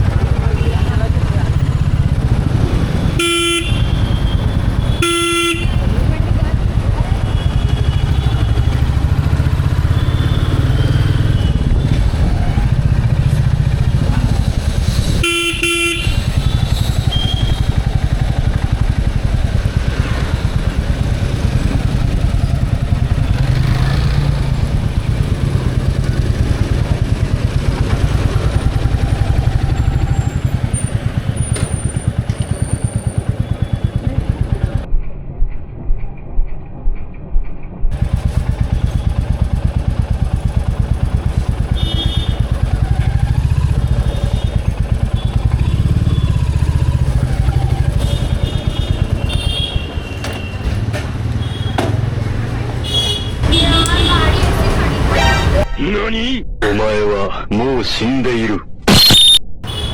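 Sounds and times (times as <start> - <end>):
motorcycle engine thumping: 0.0 - 35.5, 36.9 - 54.8
road and wind noise: 0.0 - 55.7
vehicle horn: 0.2 - 1.1, 3.0 - 6.2, 7.2 - 12.1, 15.1 - 19.0, 41.0 - 52.1, 52.8 - 55.8, 59.6 - 59.9.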